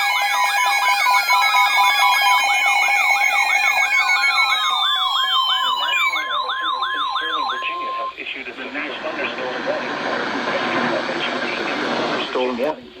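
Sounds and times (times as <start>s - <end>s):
warbling siren: 0.0s - 8.2s
steady beeping tones: 0.1s - 12.4s.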